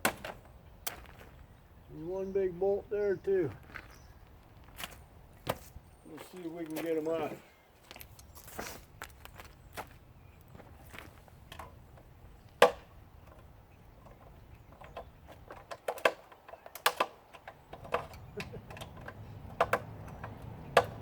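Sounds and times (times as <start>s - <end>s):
hand tools clicking on metal: 14.0s - 21.0s.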